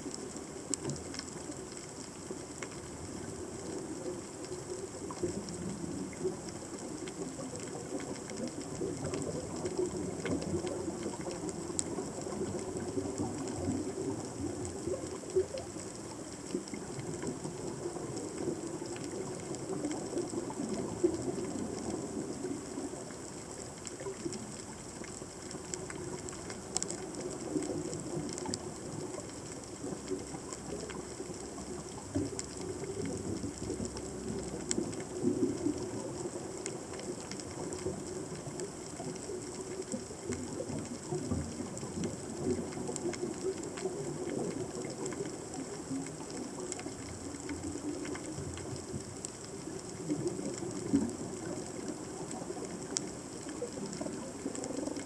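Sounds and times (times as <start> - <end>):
underwater rumble of moving water: 0.0 - 55.0.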